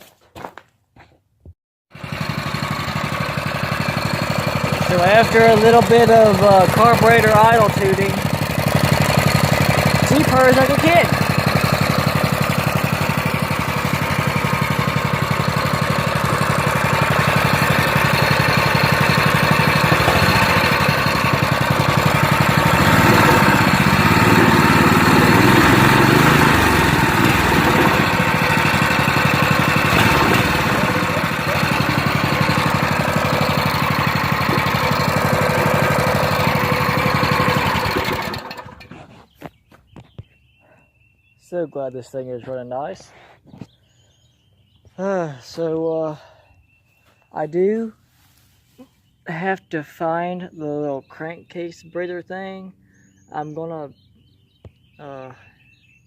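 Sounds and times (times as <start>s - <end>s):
go-kart engine running: 1.9s - 39.1s.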